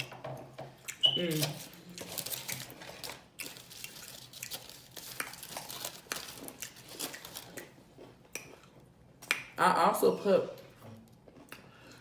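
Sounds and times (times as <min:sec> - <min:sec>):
chewing with wet lip-smacking: 0:00.8 - 0:01.2, 0:01.9 - 0:09.6, 0:10.6 - 0:12.0.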